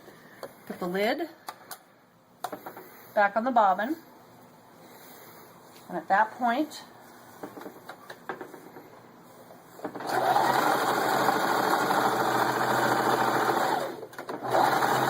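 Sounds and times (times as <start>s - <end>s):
electric sewing machine stitching: 9.9s - 15.0s.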